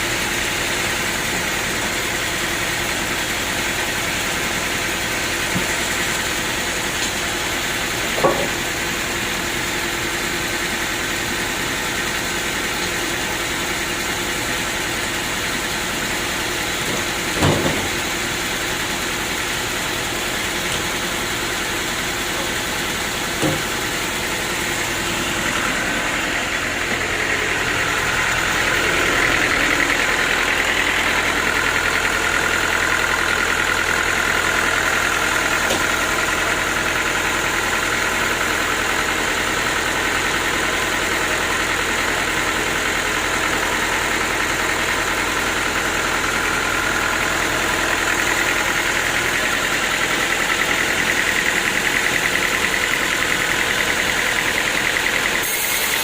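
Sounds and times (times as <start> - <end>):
sawmill engine running: 0.0 - 56.0.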